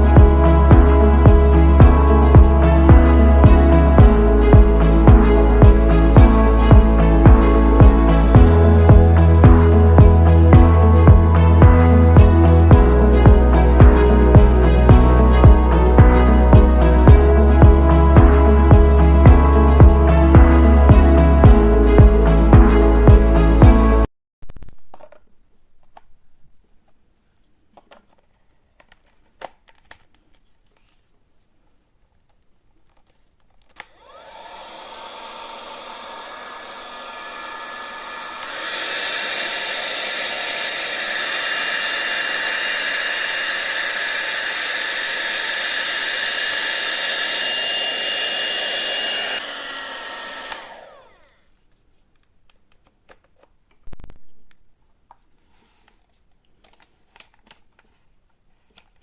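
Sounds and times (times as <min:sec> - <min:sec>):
hot-air brush fan whirring: 0:33.8 - 0:51.4.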